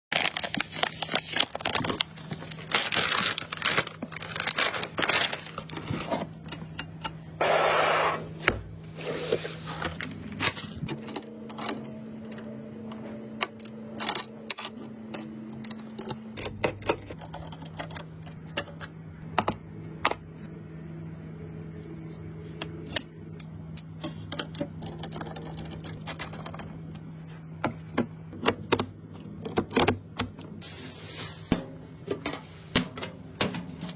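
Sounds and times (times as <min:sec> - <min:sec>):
steady low hum: 0:01.1 - 0:33.9.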